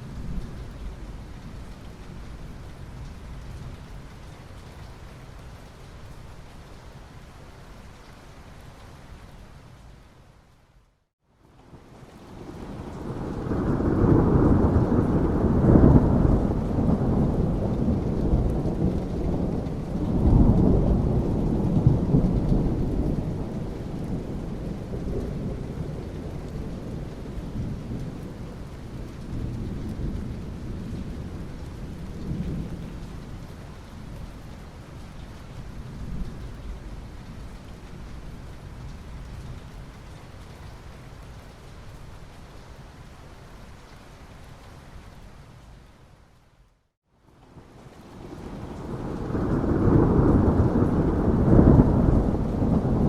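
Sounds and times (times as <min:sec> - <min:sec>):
steady rain: 0:00.0 - 0:53.0
thunder rumbling: 0:12.3 - 0:33.4, 0:48.1 - 0:53.0.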